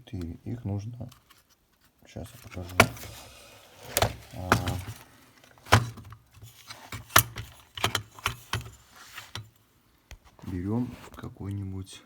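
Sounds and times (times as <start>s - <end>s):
plastic parts knocking and clicking: 2.3s - 10.2s
sharp plastic knocks: 3.8s - 5.0s.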